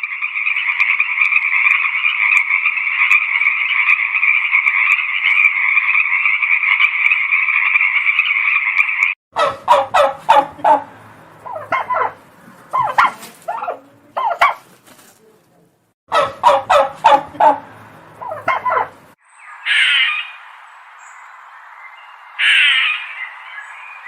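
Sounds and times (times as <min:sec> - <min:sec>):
turkey gobbling: 0:00.0 - 0:14.8, 0:16.1 - 0:20.3
crow cawing: 0:19.7 - 0:20.3, 0:22.4 - 0:23.1.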